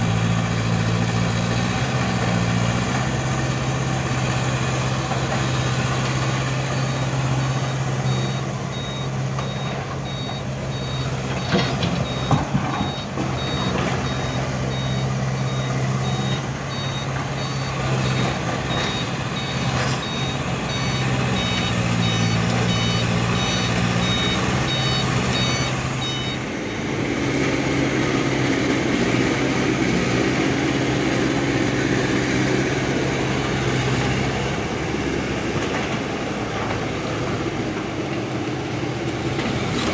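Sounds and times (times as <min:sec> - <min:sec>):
excavator diesel engine: 0:00.0 - 0:39.9
travel alarm beeping: 0:06.7 - 0:26.6.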